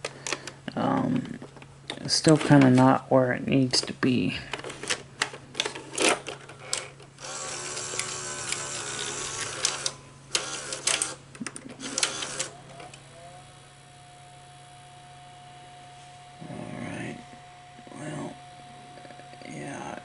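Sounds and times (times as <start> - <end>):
tape mechanism clicks: 4.5 - 13.1
mechanical whir: 5.9 - 20.0
rising whine: 12.5 - 20.0.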